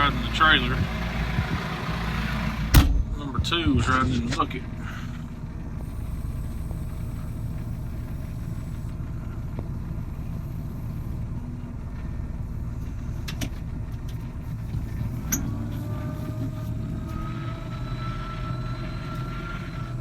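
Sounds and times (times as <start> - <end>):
farm machine engine droning: 0.0 - 20.0.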